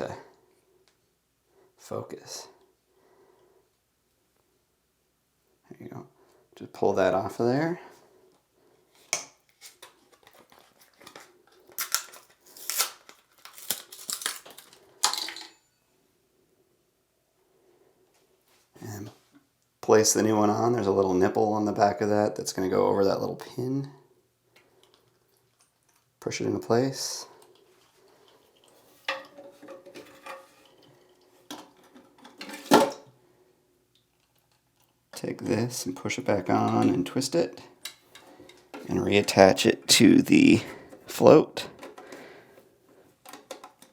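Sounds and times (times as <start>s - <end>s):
rustles crinkles and small clicks: 8.9s - 15.4s, 33.9s - 35.2s, 42.9s - 43.9s
plastic parts clicking and knocking: 41.7s - 42.2s, 43.2s - 43.9s.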